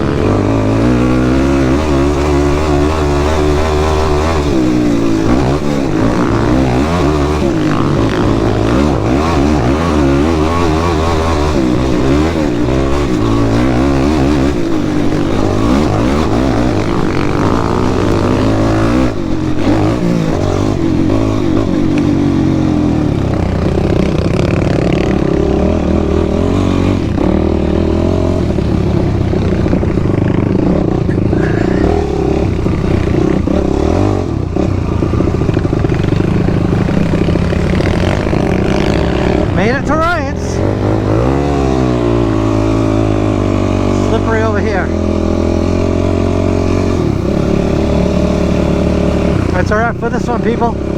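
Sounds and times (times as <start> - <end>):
quad engine revving: 0.0 - 50.9.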